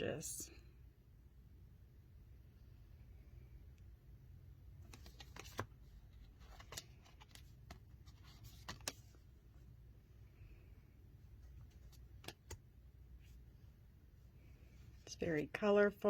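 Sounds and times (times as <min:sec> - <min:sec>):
low steady hum: 0:00.0 - 0:16.0
cards clicking and sliding: 0:04.8 - 0:09.2, 0:11.6 - 0:12.6.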